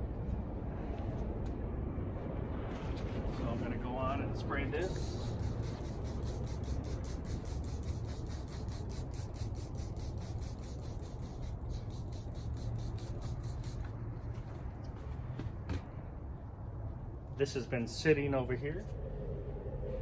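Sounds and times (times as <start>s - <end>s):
steady low rumble: 0.0s - 15.0s, 16.0s - 20.0s
spray bottle hissing sprays: 4.8s - 13.9s.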